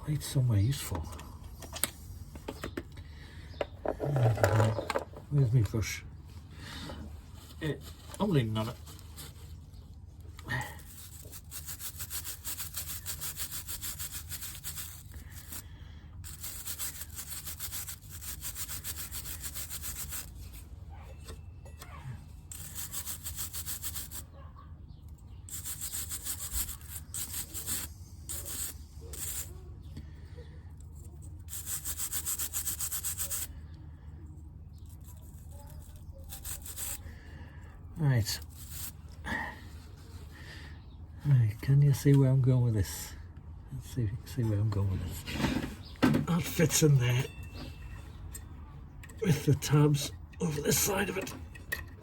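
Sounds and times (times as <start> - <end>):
steady low hum: 0.0 - 24.4
small brush scrubbing metal parts: 7.1 - 24.3, 25.1 - 33.7, 34.7 - 37.3, 38.0 - 39.2, 49.1 - 52.0.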